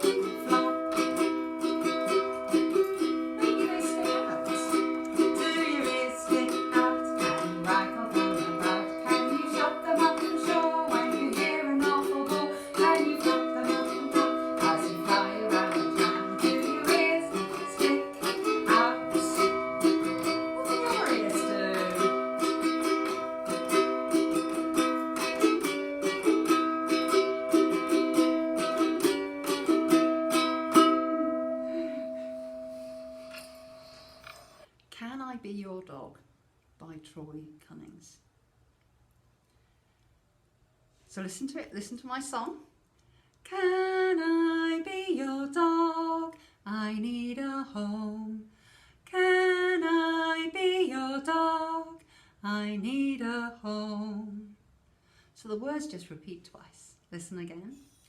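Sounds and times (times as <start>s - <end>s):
ukulele strumming chords: 0.0s - 34.4s.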